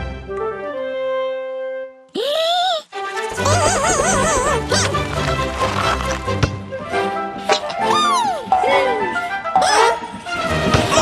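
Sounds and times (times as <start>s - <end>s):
background music: 0.0s - 2.2s, 2.9s - 11.0s
cartoon creature vocalisation: 2.2s - 5.2s.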